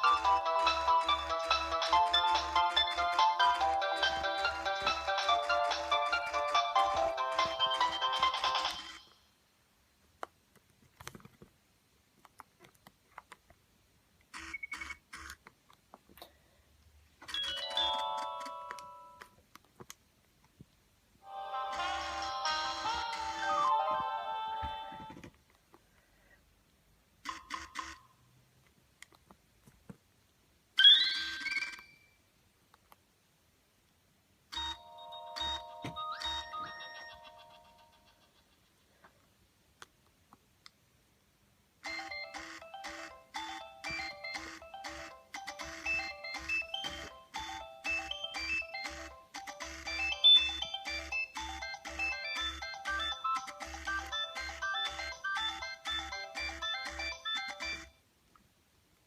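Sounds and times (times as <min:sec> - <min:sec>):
phone ringtone: 0:00.0 - 0:09.0, 0:17.2 - 0:19.3, 0:21.3 - 0:24.9, 0:30.8 - 0:32.2, 0:34.6 - 0:38.3, 0:41.8 - 0:58.0
rising electronic chirp: 0:49.8 - 0:53.3.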